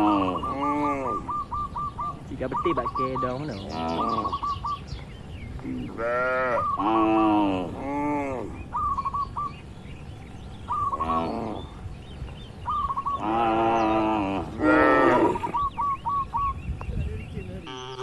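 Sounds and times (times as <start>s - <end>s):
cattle mooing: 0.0s - 1.3s, 5.8s - 8.6s, 11.0s - 11.8s, 13.2s - 15.6s, 17.6s - 18.0s.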